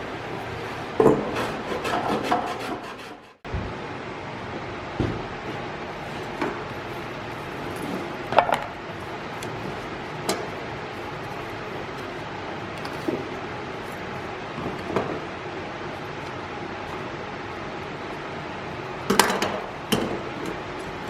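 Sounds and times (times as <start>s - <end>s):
wood and tools knocking: 8.3s - 8.7s.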